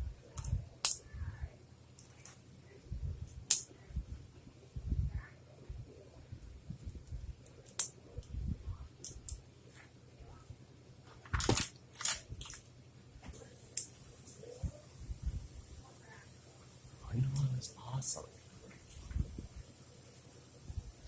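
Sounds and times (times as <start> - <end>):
plastic pieces rattling: 11.2 - 12.6.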